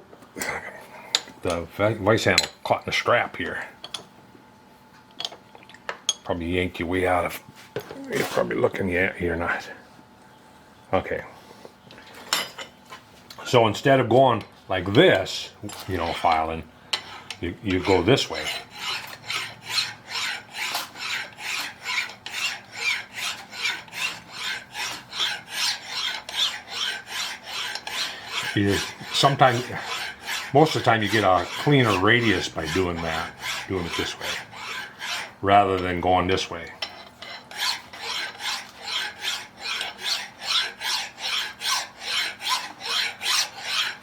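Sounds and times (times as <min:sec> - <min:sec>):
hand file rasping on metal: 0:14.9 - 0:35.9, 0:36.8 - 0:44.0.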